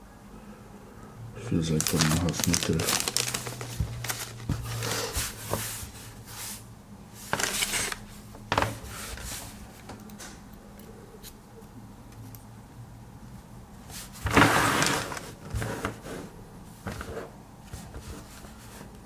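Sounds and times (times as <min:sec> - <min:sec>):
low steady hum: 0:00.0 - 0:14.4
cable handling rustles: 0:01.5 - 0:06.0, 0:07.2 - 0:10.0.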